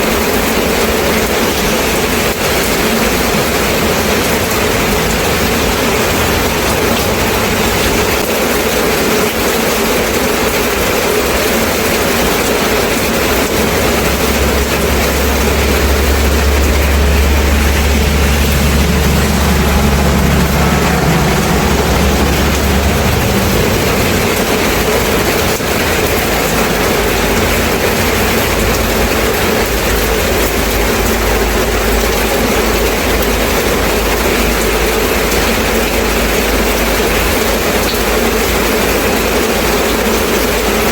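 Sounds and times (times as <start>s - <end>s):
heavy rain falling: 0.0s - 40.9s
deep low rumble: 1.7s - 9.1s, 11.3s - 34.4s.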